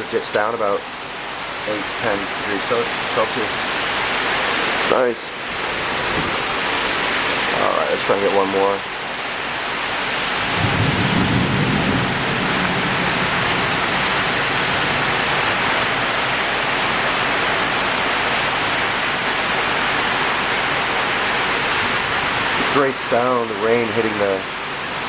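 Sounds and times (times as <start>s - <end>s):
heavy rain on metal roof: 0.0s - 25.0s
thunder rumble: 5.6s - 7.6s, 10.4s - 15.3s.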